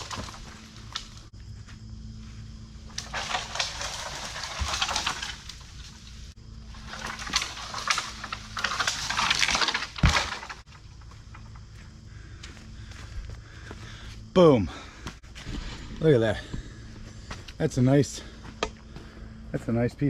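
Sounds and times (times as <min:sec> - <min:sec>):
branches crackling: 0:00.0 - 0:01.3, 0:02.6 - 0:13.8
tree trunk thudding on ground: 0:00.0 - 0:01.3, 0:02.9 - 0:06.2, 0:06.8 - 0:10.7
brush rustling: 0:02.6 - 0:11.9.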